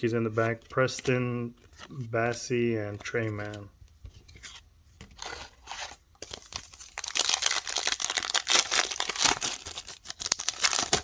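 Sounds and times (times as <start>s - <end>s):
wrapper rustling and crinkling: 5.2s - 11.0s.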